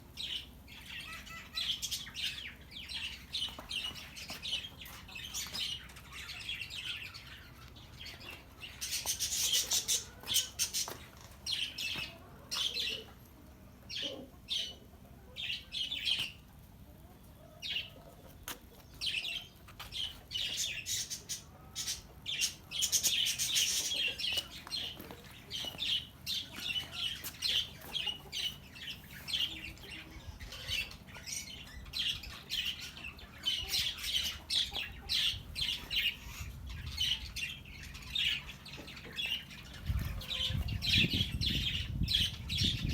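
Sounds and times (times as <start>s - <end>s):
songbirds chirping and singing: 0.0s - 42.9s.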